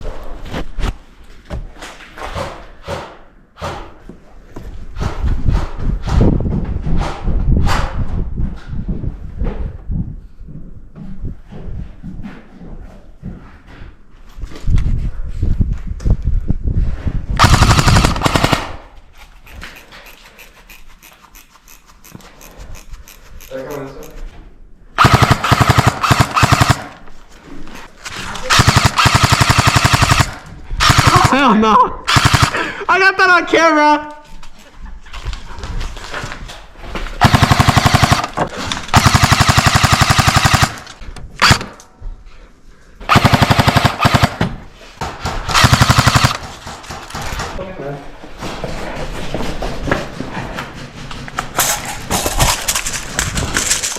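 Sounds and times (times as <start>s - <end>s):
airsoft gun full-auto burst: 17.4s - 18.9s, 25.0s - 27.0s, 28.5s - 31.5s, 32.1s - 32.6s, 37.2s - 41.8s, 43.1s - 44.5s, 45.5s - 46.4s.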